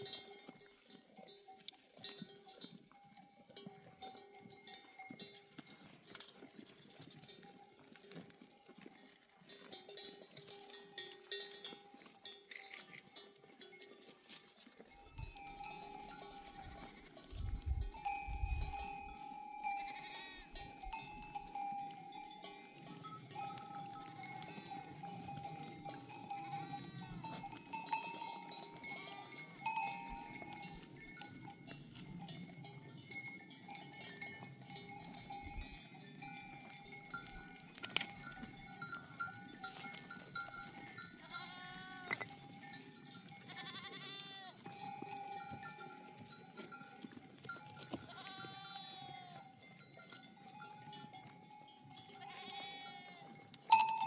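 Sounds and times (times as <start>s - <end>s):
sheep bells clinking: 0.0s - 54.0s
sheep bleating: 19.6s - 20.8s, 26.3s - 27.4s, 28.7s - 29.7s, 41.2s - 42.2s, 43.3s - 44.7s, 47.9s - 49.4s, 52.0s - 53.4s.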